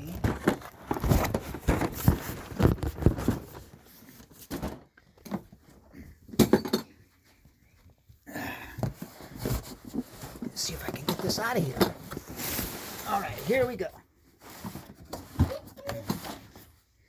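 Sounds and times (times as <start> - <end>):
cardboard packaging clattering: 0.0 - 5.8, 8.9 - 16.7.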